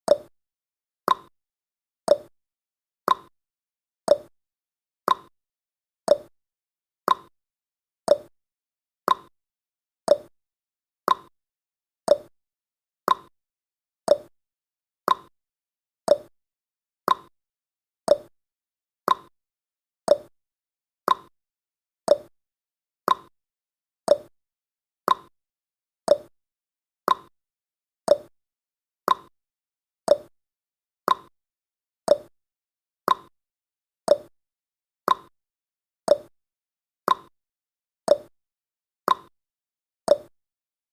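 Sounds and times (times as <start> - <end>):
timer ticking: 0.1 - 0.3, 1.1 - 1.3, 2.1 - 2.3, 3.1 - 3.3, 4.1 - 4.3, 5.1 - 5.3, 6.1 - 6.3, 7.1 - 7.3, 8.1 - 8.3, 9.1 - 9.3, 10.1 - 10.3, 11.1 - 11.3, 12.1 - 12.3, 13.1 - 13.3, 14.1 - 14.3, 15.1 - 15.3, 16.1 - 16.3, 17.1 - 17.3, 18.1 - 18.3, 19.1 - 19.3, 20.1 - 20.3, 21.1 - 21.3, 22.1 - 22.3, 24.1 - 24.3, 26.1 - 26.3, 28.1 - 28.3, 30.1 - 30.3, 31.1 - 31.3, 32.1 - 32.3, 34.1 - 34.3, 35.1 - 35.3, 36.1 - 36.3, 37.1 - 37.3, 38.1 - 38.3, 39.1 - 39.3, 40.1 - 40.3.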